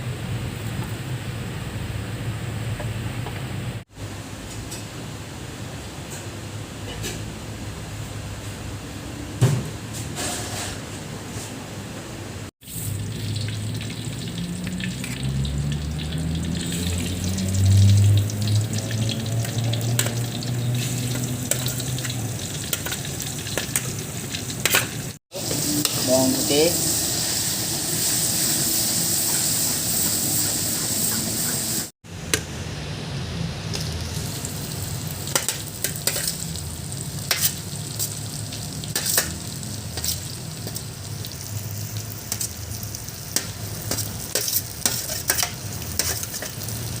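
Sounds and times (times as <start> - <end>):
food sizzling in a pan: 12.6 - 32.0, 33.6 - 47.0
spoon stirring and scraping: 43.9 - 46.7.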